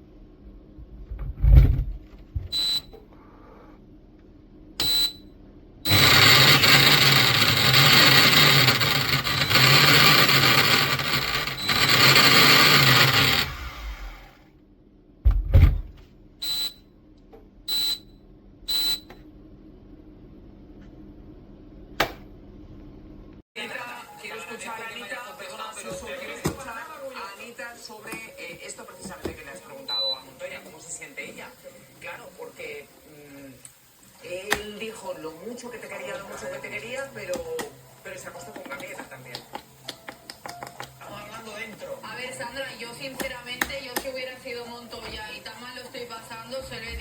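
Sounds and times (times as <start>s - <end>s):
blender control panel beeping: 4.8s - 5.2s, 5.9s - 14.3s, 16.4s - 16.8s, 17.7s - 18.0s, 18.7s - 19.2s
blender motor running: 5.9s - 14.5s
thump: 15.2s - 16.0s.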